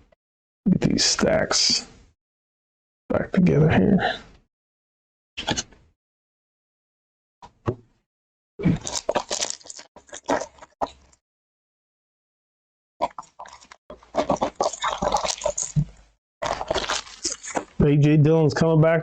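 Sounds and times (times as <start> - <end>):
wrappers crinkling: 8.8 - 10.5, 14.2 - 15.8, 16.4 - 17.8.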